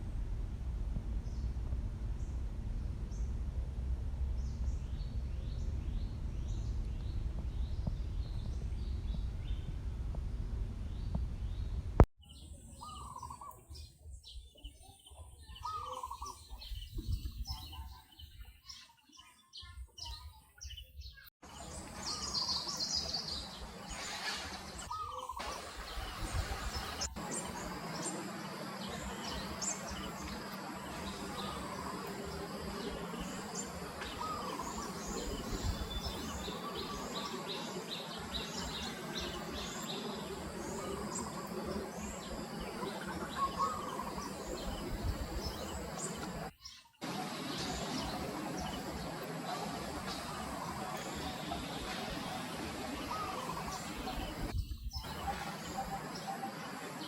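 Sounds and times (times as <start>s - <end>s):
high bird twittering: 15.5s - 18.8s, 20.1s - 57.0s
steady background hiss: 21.5s - 57.0s.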